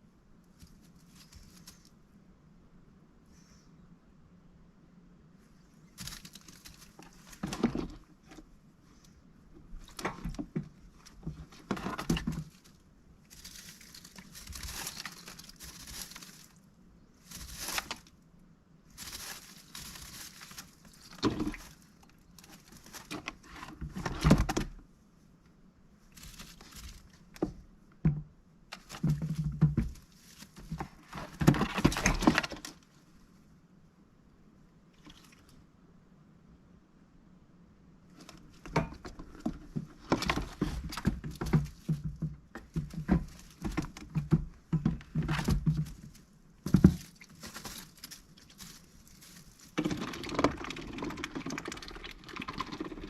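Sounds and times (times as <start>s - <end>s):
duck rustling and scuffling: 0.5s - 2.0s, 5.8s - 18.2s, 18.9s - 24.9s, 26.0s - 33.2s, 38.1s - 53.0s.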